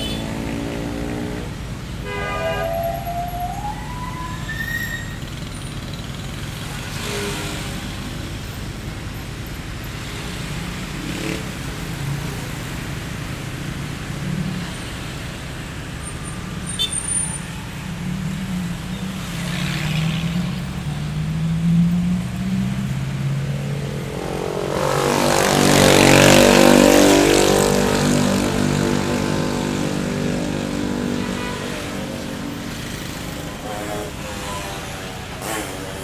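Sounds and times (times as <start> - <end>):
road traffic rumble: 0.0 - 36.0
vehicles passing: 0.0 - 36.0
rising siren-like tone: 2.5 - 5.3.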